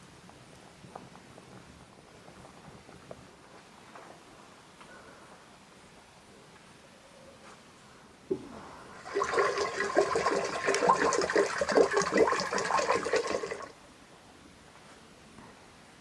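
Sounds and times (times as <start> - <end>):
water running and splashing: 9.0 - 13.7.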